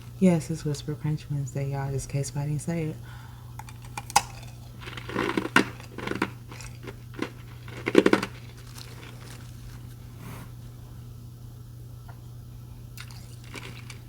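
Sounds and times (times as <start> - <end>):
ice crunching being chewed: 3.6 - 10.1, 13.0 - 14.0.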